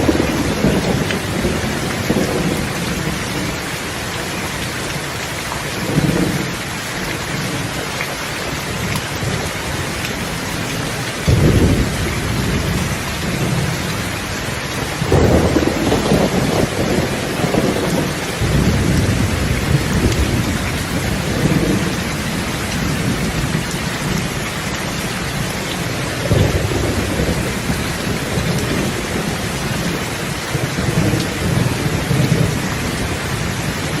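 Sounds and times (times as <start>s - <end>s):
thunder rumbling: 0.0s - 5.0s, 5.7s - 7.8s, 8.7s - 34.0s
heavy rain: 0.0s - 34.0s.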